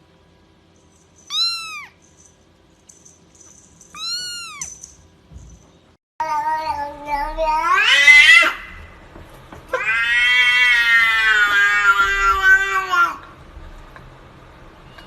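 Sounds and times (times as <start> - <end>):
cat yowling meows: 1.3 - 2.0, 3.9 - 4.8, 6.2 - 8.8, 9.7 - 13.2.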